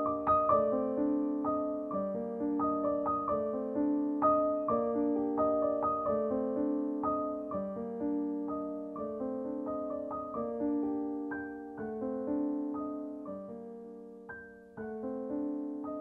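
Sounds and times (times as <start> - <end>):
gentle solo piano music: 0.0 - 16.0.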